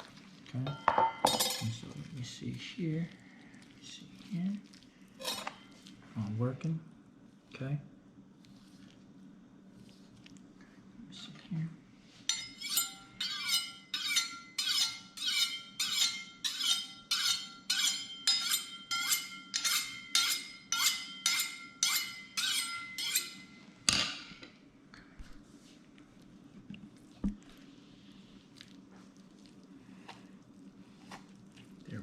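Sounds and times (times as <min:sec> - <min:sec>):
knife honing on steel rod: 0:12.3 - 0:24.1.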